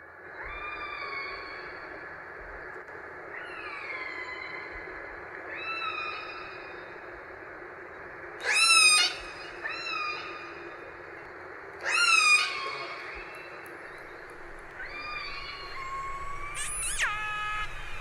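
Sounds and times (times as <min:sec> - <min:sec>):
steady hiss: 0:12.5 - 0:18.0
orca calls: 0:14.4 - 0:18.0.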